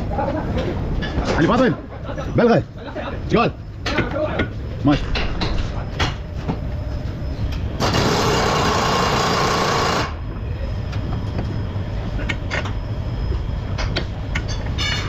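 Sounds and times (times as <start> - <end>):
low workshop rumble: 0.0 - 15.0
compressed-air tool running: 7.8 - 10.2.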